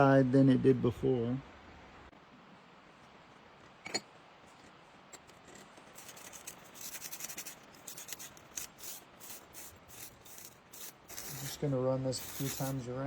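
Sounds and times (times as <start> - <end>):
wire brush scraping copper pipe: 5.4 - 13.0.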